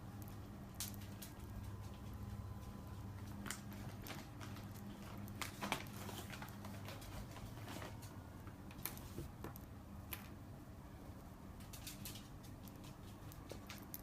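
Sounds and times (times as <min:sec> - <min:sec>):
low hum: 0:00.0 - 0:05.5.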